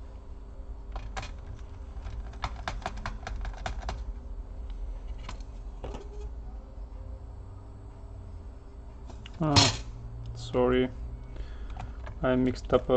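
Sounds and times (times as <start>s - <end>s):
steady low hum: 0.0s - 12.9s
laptop clicks and taps: 0.9s - 4.1s.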